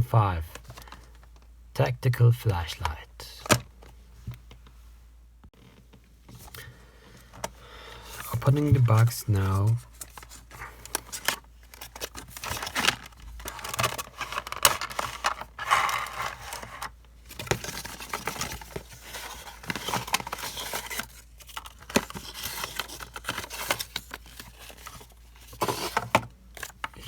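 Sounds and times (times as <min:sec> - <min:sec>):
cardboard packaging rustling: 0:08.1 - 0:27.0.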